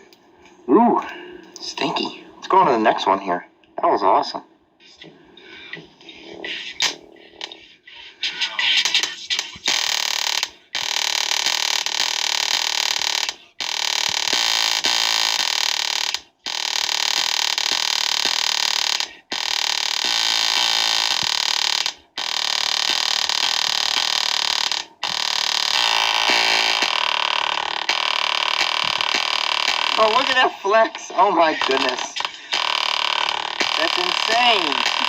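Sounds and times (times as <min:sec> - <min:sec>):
heavily distorted speaker playing song: 0:05.0 - 0:35.0.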